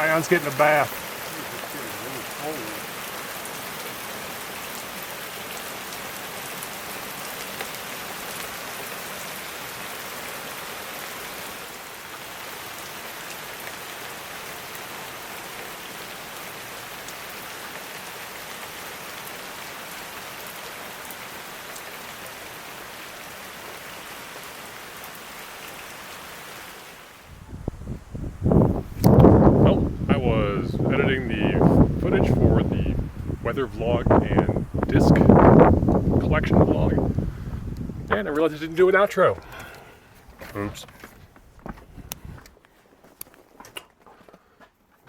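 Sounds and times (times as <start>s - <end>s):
raindrops ticking: 0.0s - 9.4s, 28.0s - 43.8s
rain pouring: 0.0s - 42.5s.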